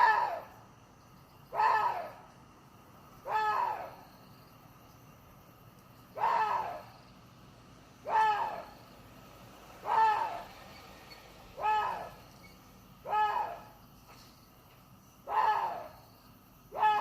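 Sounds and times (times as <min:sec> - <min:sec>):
deer barking calls: 0:01.5 - 0:02.2, 0:03.2 - 0:04.0, 0:06.2 - 0:07.0, 0:08.0 - 0:08.8, 0:09.8 - 0:10.5, 0:11.6 - 0:12.3, 0:13.0 - 0:13.7, 0:15.2 - 0:16.0, 0:16.7 - 0:17.0.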